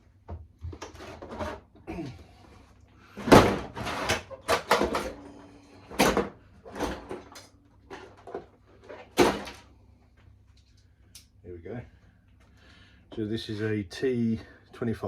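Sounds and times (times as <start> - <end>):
tools and metal parts clattering: 3.2 - 5.3, 5.9 - 9.6.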